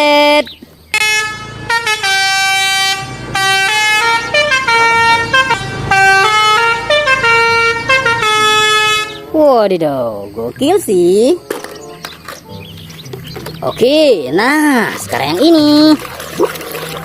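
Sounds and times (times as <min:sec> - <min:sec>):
musical air horns playing tune: 0:01.0 - 0:09.4.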